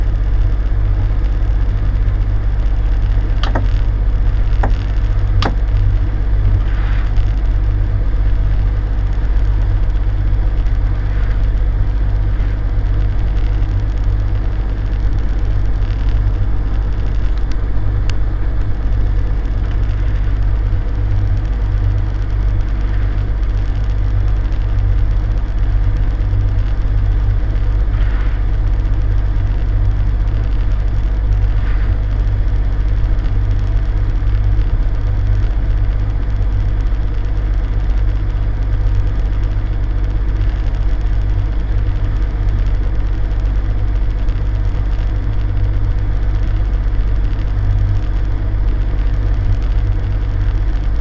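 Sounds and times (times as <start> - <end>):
boat engine droning: 2.0 - 13.6
sharp clicks: 3.3 - 5.8.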